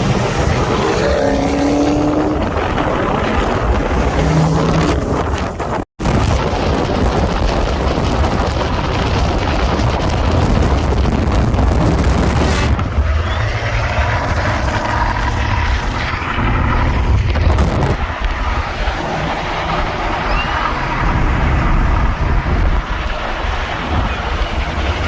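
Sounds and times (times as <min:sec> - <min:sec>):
vehicle traffic noise: 0:00.0 - 0:25.0
wind buffeting microphone: 0:00.0 - 0:25.0.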